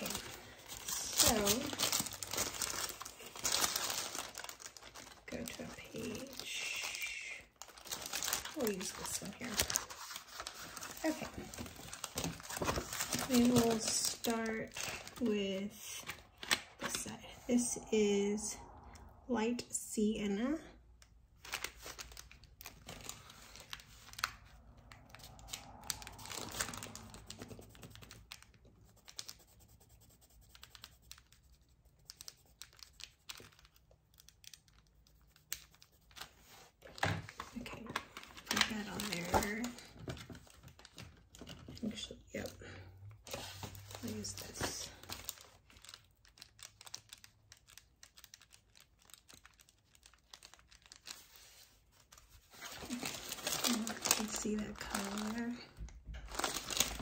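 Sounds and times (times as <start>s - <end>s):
pencil scratching on paper: 28.9s - 32.7s.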